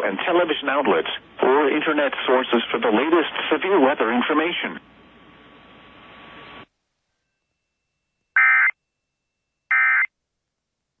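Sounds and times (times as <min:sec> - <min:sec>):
faint broadcast hiss: 0:00.0 - 0:07.4.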